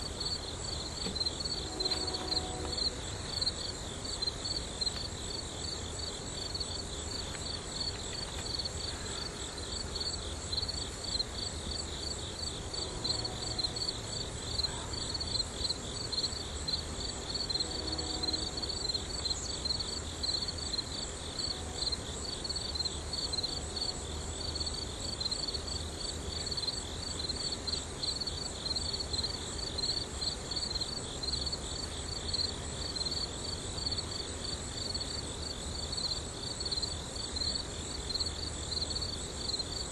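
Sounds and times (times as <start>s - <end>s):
insects chirping: 0.0s - 39.9s.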